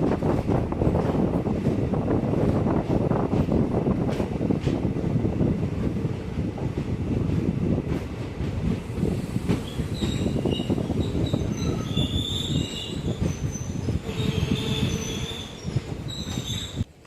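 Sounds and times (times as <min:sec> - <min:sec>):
train wheels clattering on track: 0:00.0 - 0:16.9
wheel squeal: 0:09.6 - 0:16.9.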